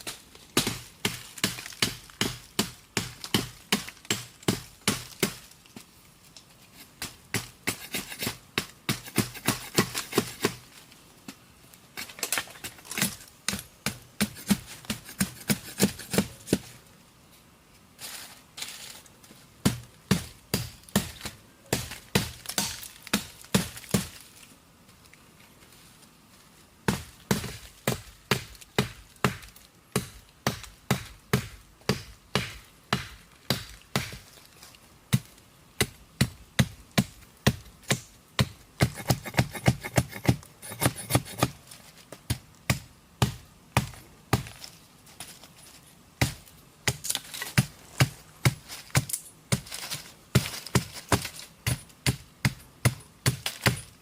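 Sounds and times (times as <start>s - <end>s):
blade chopping wood: 7.0s - 10.6s, 12.9s - 16.7s, 35.1s - 41.6s.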